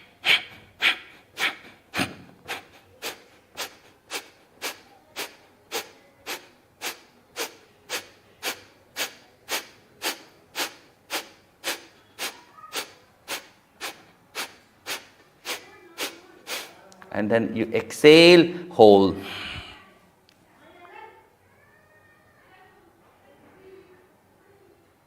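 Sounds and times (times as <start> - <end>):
forceful nasal exhalations: 0.0 - 16.8.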